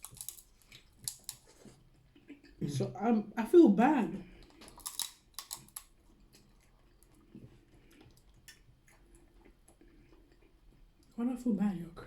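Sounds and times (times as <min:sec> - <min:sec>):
crab shell cracking: 0:00.0 - 0:01.6, 0:04.5 - 0:06.0.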